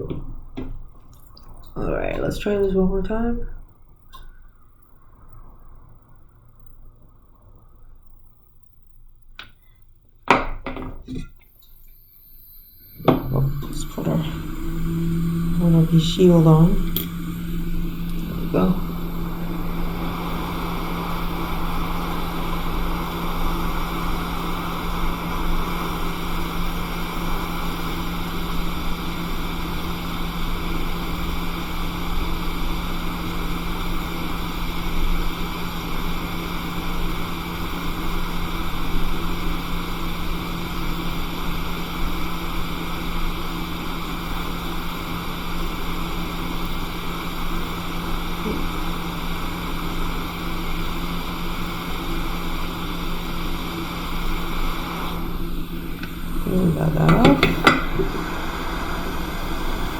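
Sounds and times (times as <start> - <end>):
low hum: 11.1 - 43.1, 47.4 - 59.9
hot air blower hissing: 11.1 - 59.9.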